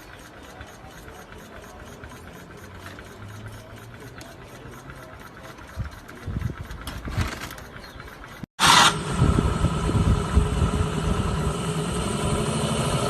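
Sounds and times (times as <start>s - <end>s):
model engine being cranked: 0.0s - 8.9s
low engine sputters: 0.0s - 13.0s.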